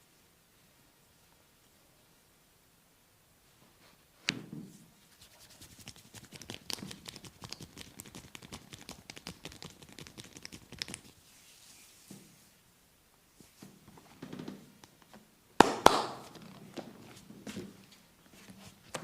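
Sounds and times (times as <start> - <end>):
hands tapping and scratching scalp: 5.1 - 11.2.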